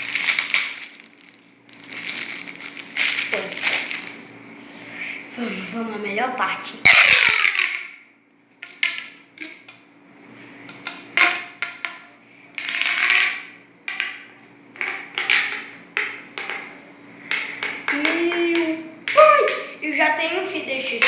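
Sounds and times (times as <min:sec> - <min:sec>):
packaging crinkling and rustling: 0:00.0 - 0:04.2.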